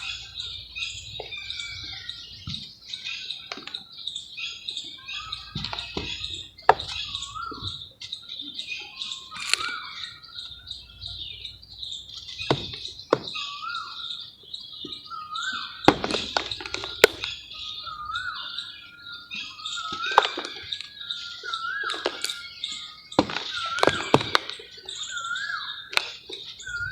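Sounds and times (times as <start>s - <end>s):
birds chirping and singing: 0.0s - 26.9s
mud cracking and knocking: 12.5s - 13.4s, 15.9s - 17.4s, 19.9s - 20.8s, 21.9s - 22.5s, 23.2s - 24.6s.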